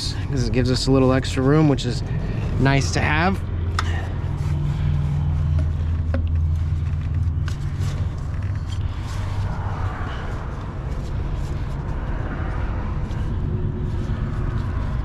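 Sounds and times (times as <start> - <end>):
steady low hum: 0.0 - 15.0
hoses clicking and knocking: 5.4 - 8.9.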